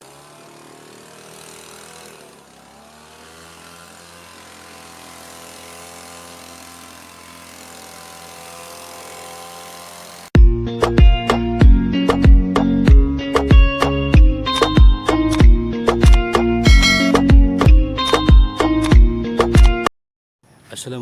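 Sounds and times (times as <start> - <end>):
leaf blower engine running: 0.0 - 10.4.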